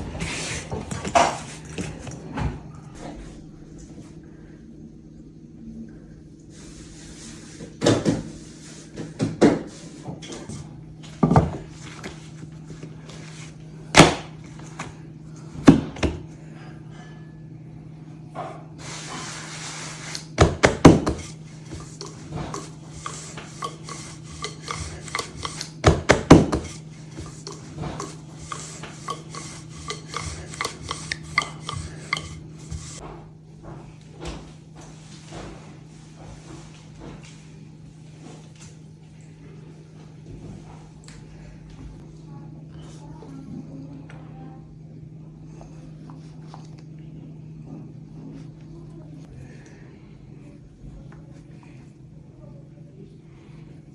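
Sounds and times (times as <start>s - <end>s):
steady low hum: 0.0s - 34.0s
utensils clattering: 21.1s - 33.0s.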